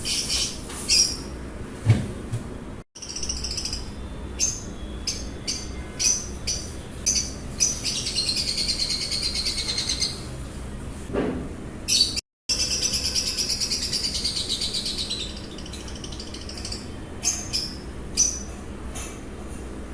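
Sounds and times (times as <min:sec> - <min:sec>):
lovebirds chirping: 0:03.0 - 0:10.3, 0:11.9 - 0:18.5.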